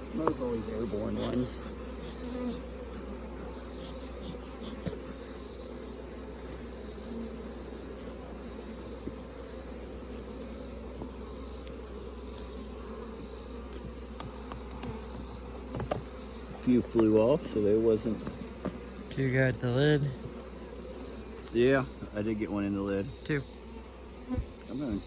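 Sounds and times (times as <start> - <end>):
honey bees buzzing: 0.0 - 25.0.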